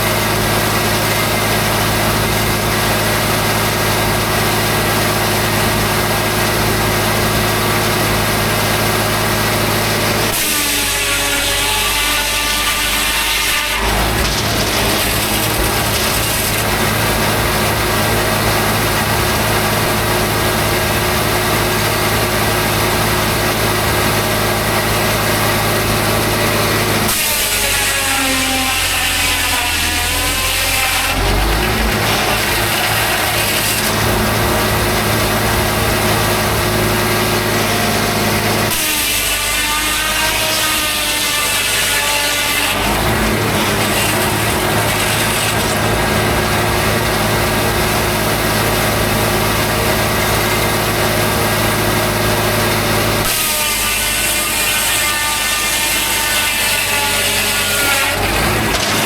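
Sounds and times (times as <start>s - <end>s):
circular saw cutting log: 0.0s - 59.0s
machine running without cutting: 0.0s - 59.0s.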